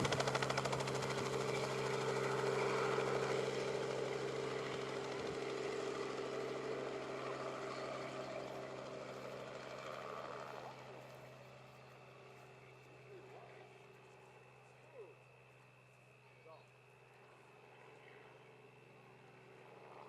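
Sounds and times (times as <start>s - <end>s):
helicopter engine and rotor hum: 0.0s - 20.0s.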